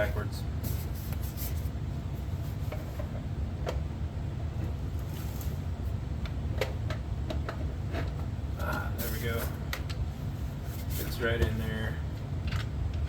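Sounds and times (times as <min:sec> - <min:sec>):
steady low hum: 0:00.0 - 0:13.0
parts clicking and knocking: 0:06.2 - 0:08.8, 0:12.4 - 0:13.0.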